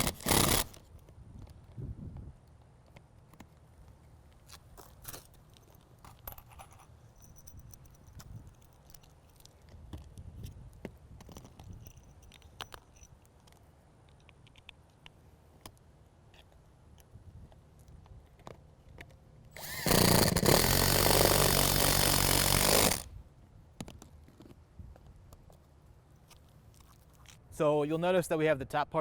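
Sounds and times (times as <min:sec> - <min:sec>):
metal hardware clinking: 0:05.3 - 0:09.5.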